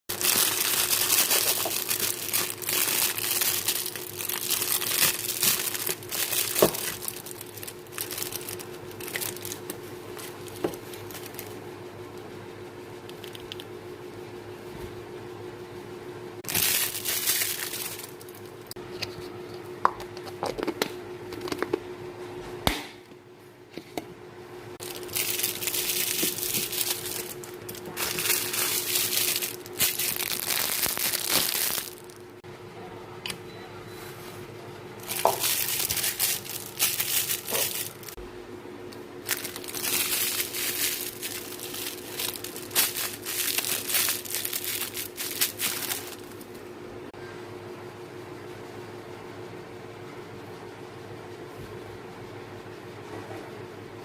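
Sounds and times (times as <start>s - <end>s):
packaging crinkling and tearing: 0.1s - 11.6s, 16.5s - 18.6s, 24.8s - 32.3s, 35.0s - 38.2s, 39.2s - 46.6s
faint hum: 0.1s - 54.0s.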